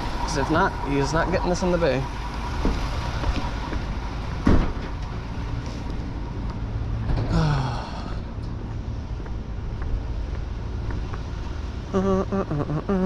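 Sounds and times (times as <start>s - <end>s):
truck door slamming: 4.4s - 5.0s.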